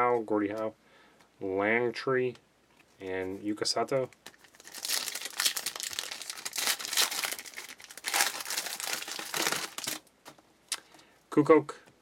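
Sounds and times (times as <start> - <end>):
card pack wrapper crinkling: 4.0 - 10.4.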